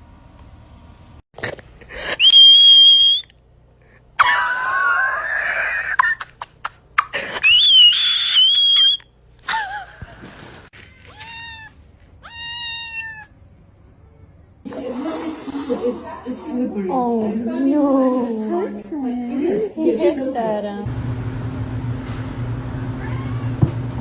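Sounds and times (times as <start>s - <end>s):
animal cries: 7.4s - 9.0s, 10.8s - 13.3s, 23.0s - 23.6s.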